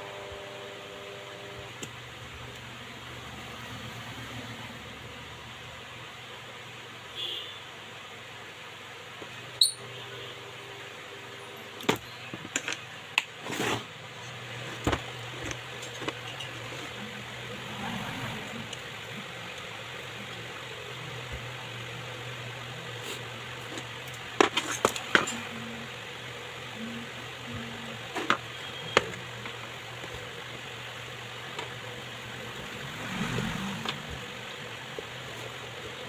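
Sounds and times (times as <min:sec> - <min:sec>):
steady low hum: 0:00.0 - 0:07.0.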